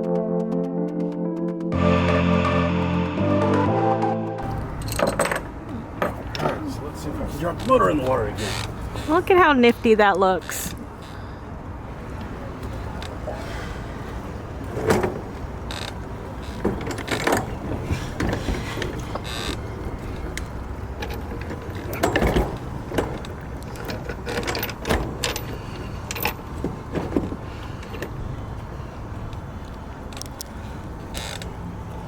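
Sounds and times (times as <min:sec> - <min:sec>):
low background noise: 0:04.4 - 0:32.0.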